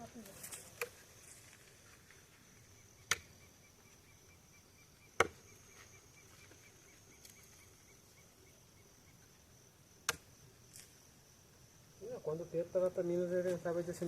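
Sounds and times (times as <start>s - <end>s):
night insects chirping: 0.0s - 14.0s.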